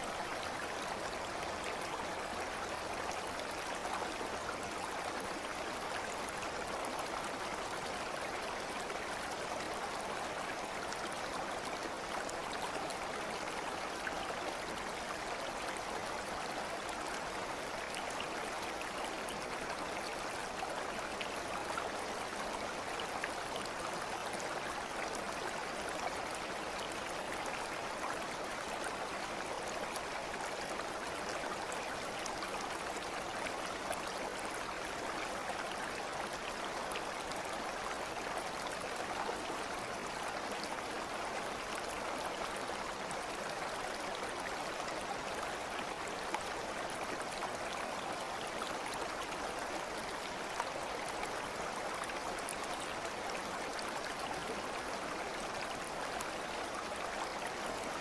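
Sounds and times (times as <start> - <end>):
stream flowing: 0.0 - 58.0.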